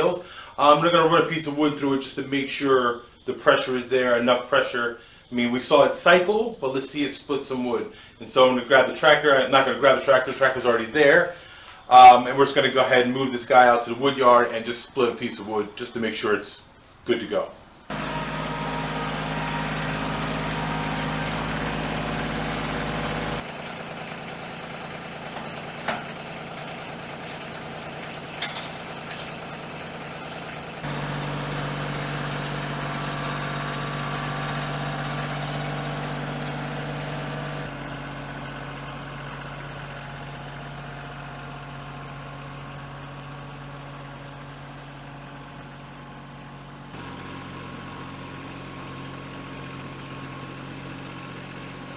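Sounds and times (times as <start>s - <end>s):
engine running: 17.8s - 51.9s.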